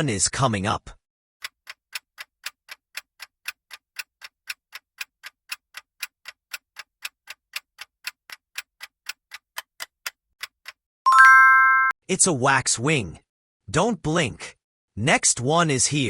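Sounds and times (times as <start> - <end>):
timer ticking: 1.4 - 12.0.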